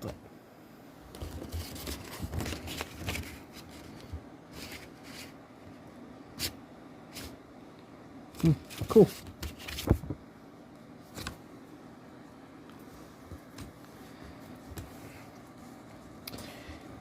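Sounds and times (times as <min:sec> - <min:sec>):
paper rustling: 0:01.1 - 0:05.4, 0:08.4 - 0:10.2, 0:11.1 - 0:11.4.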